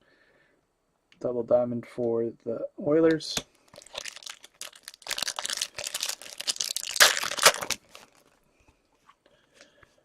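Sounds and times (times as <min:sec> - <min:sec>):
plastic wrapper crinkling: 0:03.6 - 0:08.4.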